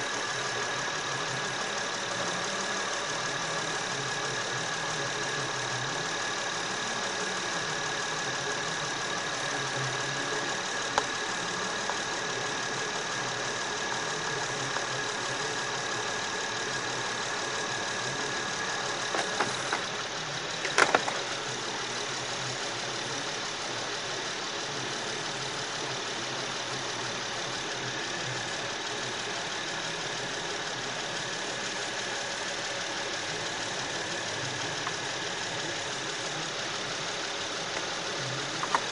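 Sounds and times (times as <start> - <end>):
car engine idling: 0.0 - 38.9
sharp clicks: 20.6 - 21.4.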